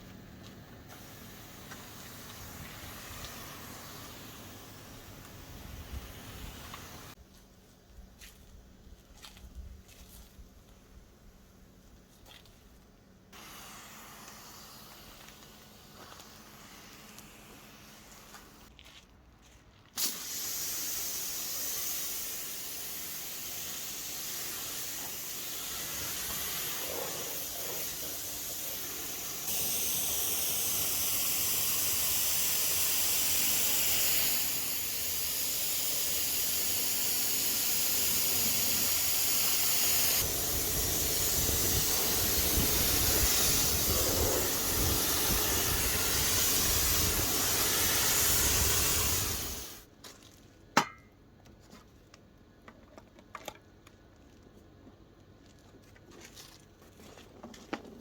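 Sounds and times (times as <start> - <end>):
water spray hissing on car: 0.9 - 7.2, 13.4 - 18.7, 20.0 - 49.9.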